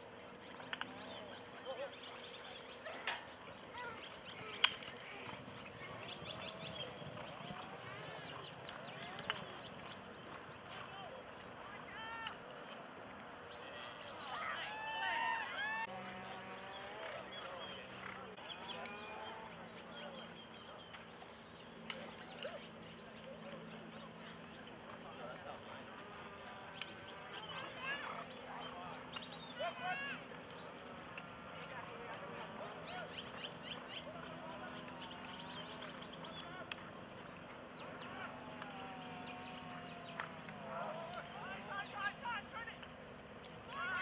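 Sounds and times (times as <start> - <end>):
faint distant voices: 0.0 - 44.0.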